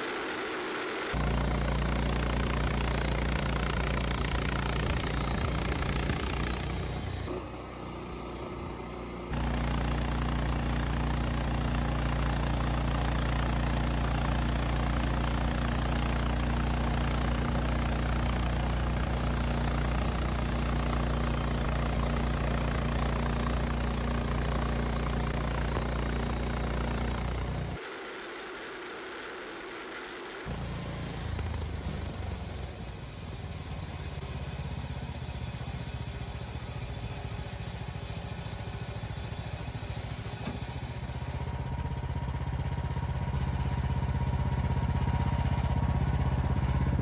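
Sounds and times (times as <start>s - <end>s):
bandsaw cutting through log: 1.2s - 27.8s.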